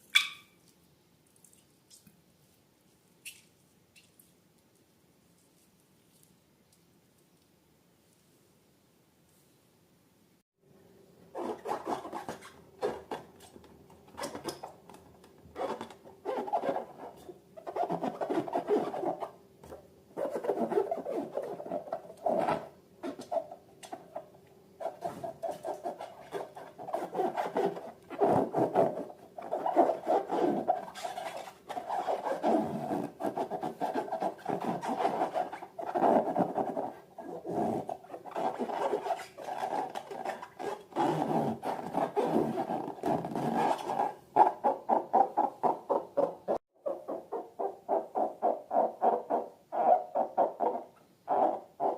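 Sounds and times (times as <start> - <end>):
balloons and slime rubbing: 20.2 - 23.5, 24.8 - 46.0.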